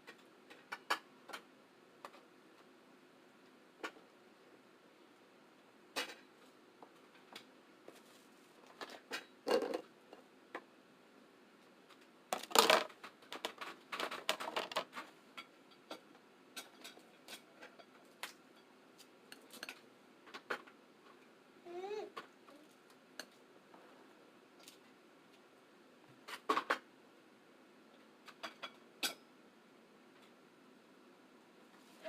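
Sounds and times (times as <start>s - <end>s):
clatter of food and utensils: 5.9s - 10.6s, 11.9s - 21.2s, 22.2s - 23.4s, 26.2s - 26.9s, 28.2s - 29.3s.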